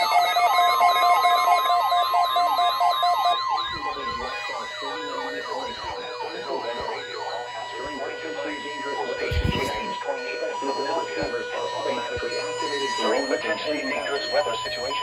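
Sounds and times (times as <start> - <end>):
electronic sirens sweeping: 0.0 - 15.0
steady high tone: 0.0 - 15.0.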